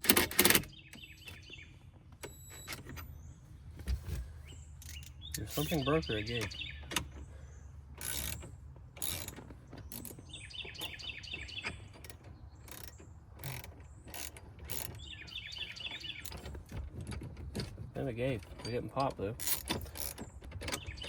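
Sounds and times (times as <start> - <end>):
ratchet wrench clicking: 8.0 - 8.4, 9.0 - 10.1, 12.0 - 15.0.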